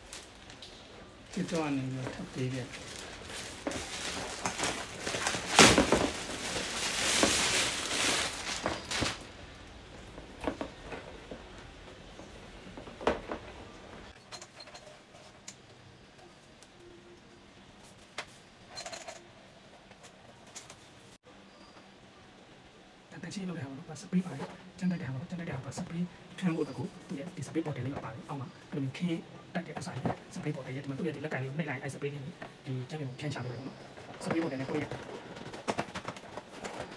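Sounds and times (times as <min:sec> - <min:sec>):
packaging rustling and crinkling: 0:00.0 - 0:14.2, 0:33.5 - 0:36.9.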